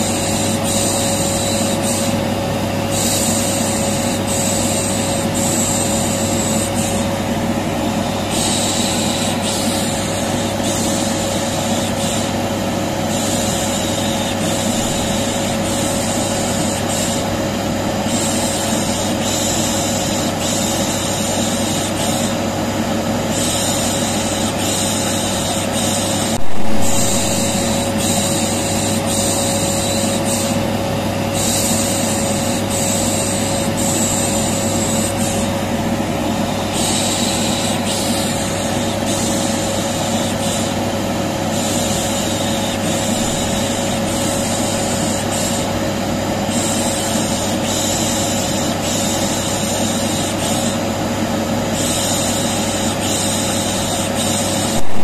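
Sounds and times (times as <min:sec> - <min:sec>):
vacuum cleaner running: 0:00.0 - 0:55.0
loud click: 0:26.4 - 0:28.4, 0:54.8 - 0:55.0.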